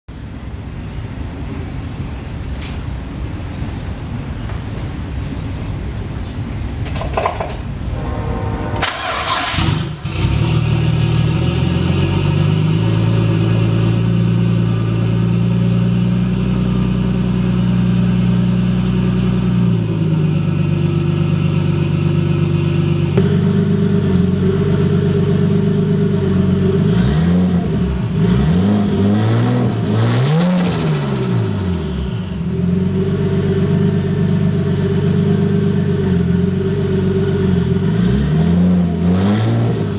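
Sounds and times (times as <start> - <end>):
car engine starting: 7.9 - 39.9
engine revving: 8.0 - 39.9
car engine idling: 8.8 - 37.9.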